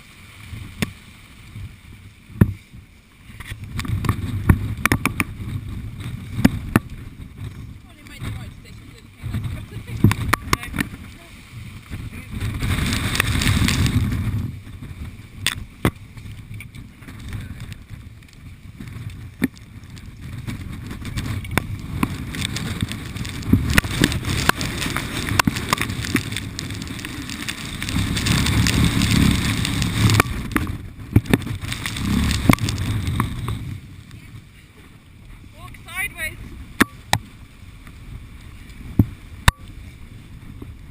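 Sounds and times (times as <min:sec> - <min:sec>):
wind buffeting the microphone: 0:00.0 - 0:40.9
sharp ticks and clicks: 0:20.9 - 0:33.7.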